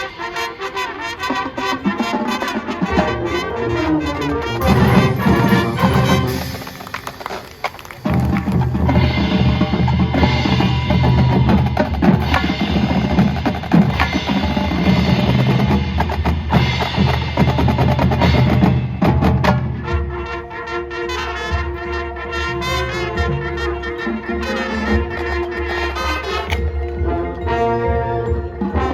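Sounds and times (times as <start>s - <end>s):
band playing held chords: 4.6s - 11.9s
snare and bass drums playing: 4.6s - 19.8s.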